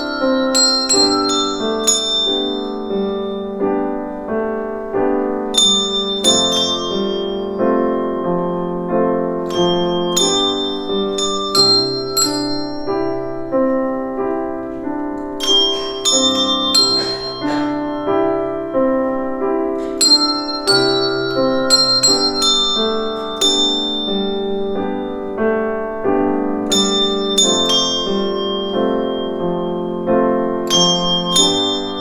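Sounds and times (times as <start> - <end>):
handbells playing slow melody: 0.0 - 32.0
sustained piano accompaniment: 0.0 - 32.0.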